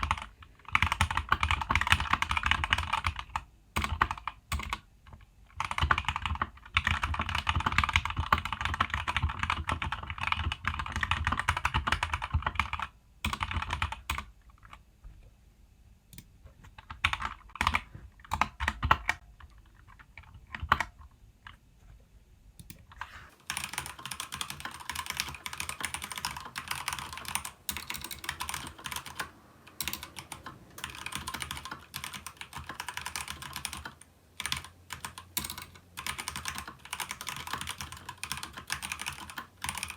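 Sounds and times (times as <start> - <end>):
mechanical keyboard typing: 0.0 - 14.8, 16.1 - 21.6, 22.6 - 39.9.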